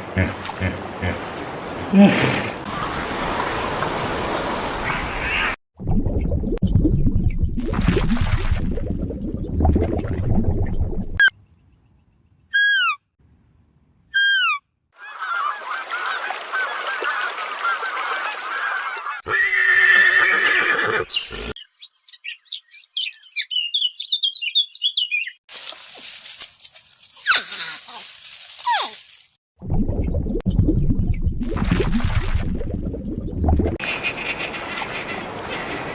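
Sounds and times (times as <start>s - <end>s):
fast high chirping: 12.6s - 13.0s, 14.2s - 14.6s
hissing with falling calls: 12.6s - 13.0s, 14.2s - 17.9s.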